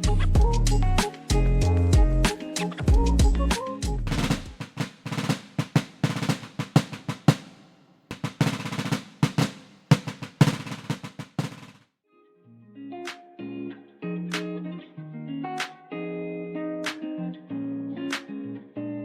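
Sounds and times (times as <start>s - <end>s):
drum solo with snare rolls: 2.0s - 11.8s.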